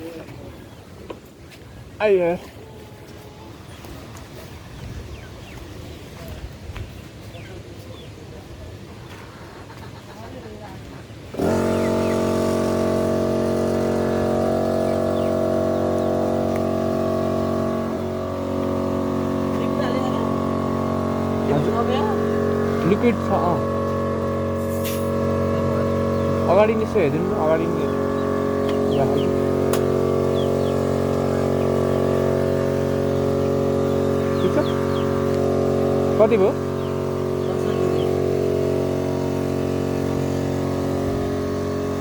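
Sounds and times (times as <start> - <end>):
air compressor humming: 11.2 - 42.0.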